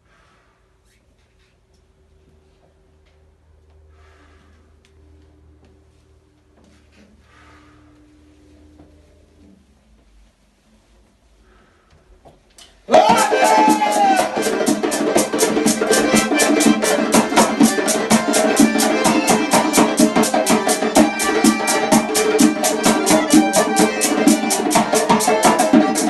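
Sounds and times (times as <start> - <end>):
accordion dance music: 12.9 - 26.0
fast drum beat: 12.9 - 26.0.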